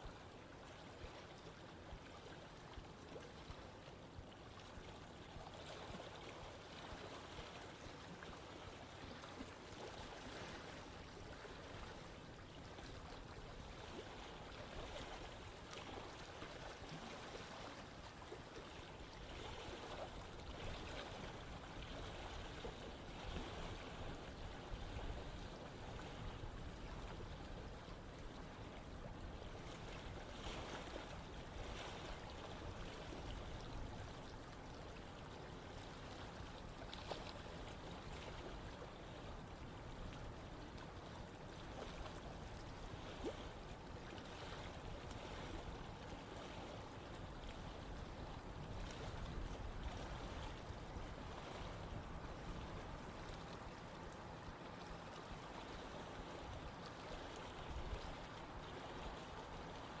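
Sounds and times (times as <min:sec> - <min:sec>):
stream water rushing: 0:28.0 - 1:00.0.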